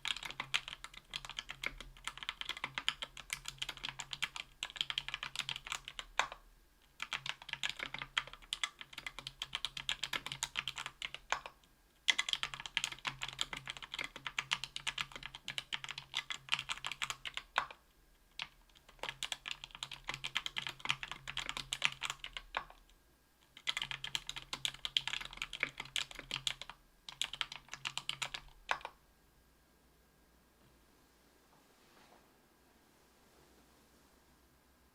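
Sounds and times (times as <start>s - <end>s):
fast keyboard typing: 0.0s - 6.4s, 7.0s - 22.8s, 23.5s - 29.0s.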